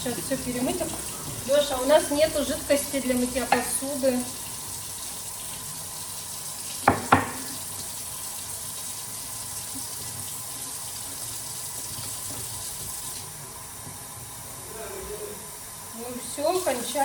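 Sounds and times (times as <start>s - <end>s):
tap running into sink: 3.4s - 3.9s, 6.7s - 7.8s, 11.8s - 13.2s
sharp knocks: 6.9s - 7.5s.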